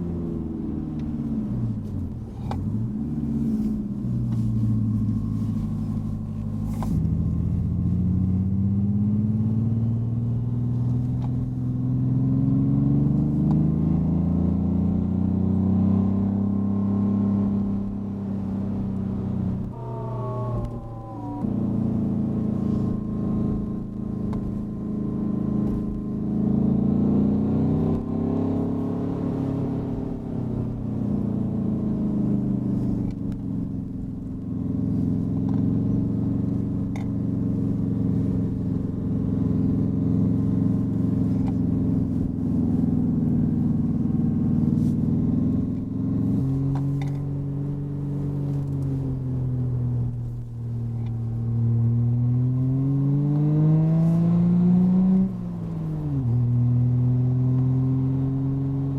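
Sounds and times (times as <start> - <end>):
artificial engine sound: 19.6 - 25.9.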